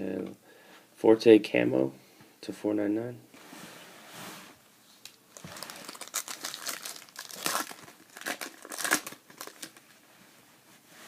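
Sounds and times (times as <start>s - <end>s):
foil wrapper crinkling: 5.0s - 10.0s.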